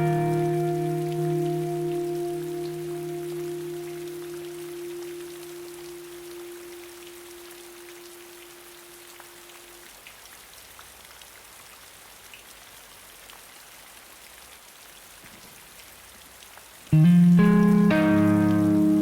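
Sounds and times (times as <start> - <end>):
held guitar note: 0.0 - 8.4, 16.9 - 19.0
steady rain: 0.0 - 19.0.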